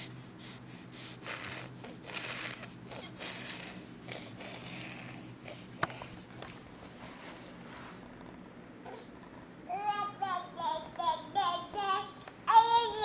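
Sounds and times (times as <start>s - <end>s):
baby snuffling and snorting: 0.0s - 8.1s.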